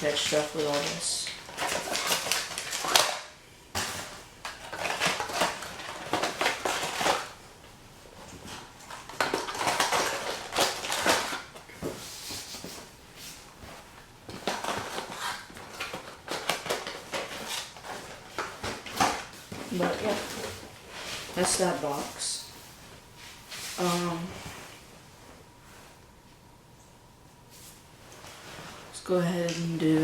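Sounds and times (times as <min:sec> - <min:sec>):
packaging rustling: 0:00.0 - 0:07.5, 0:08.1 - 0:22.5.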